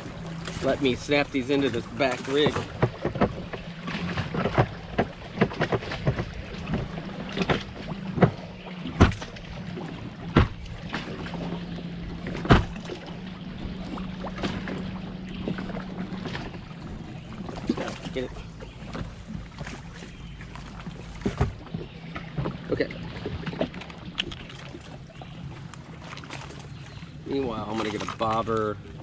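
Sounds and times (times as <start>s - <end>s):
hard knocks and clicks of gear: 1.4s - 9.5s, 10.2s - 11.4s, 12.2s - 13.1s, 17.4s - 24.9s.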